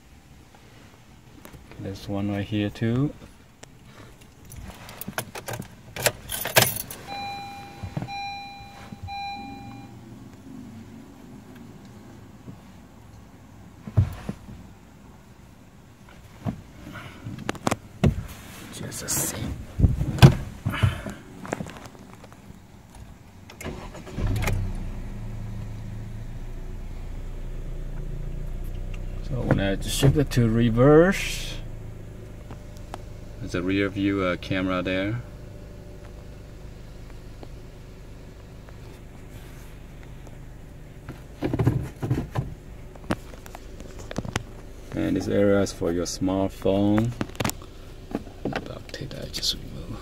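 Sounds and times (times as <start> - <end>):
car engine cranking and idling: 0.0 - 50.0
car electronic warning chime: 7.0 - 10.0.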